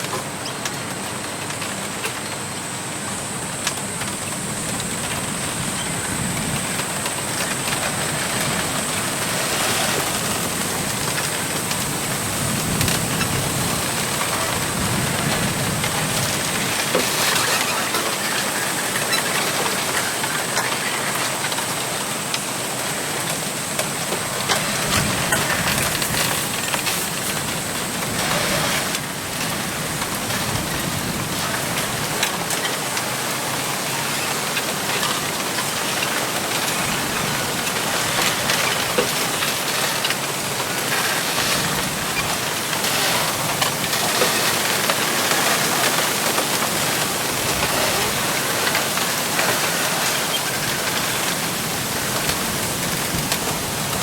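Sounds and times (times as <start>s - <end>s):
wind through bamboo leaves: 0.0s - 54.0s.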